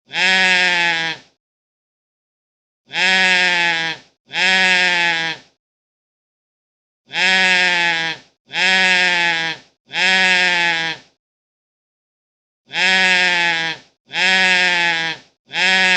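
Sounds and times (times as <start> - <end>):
goat bleating: 0.1 - 1.3, 2.9 - 5.5, 7.1 - 11.1, 12.7 - 15.9.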